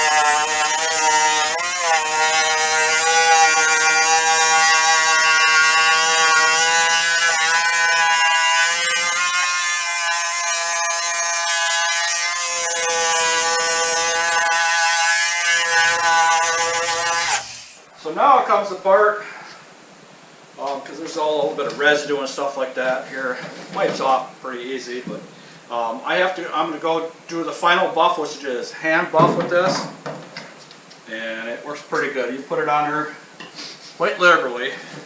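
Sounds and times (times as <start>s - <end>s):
buffing machine whine: 0.0s - 17.9s.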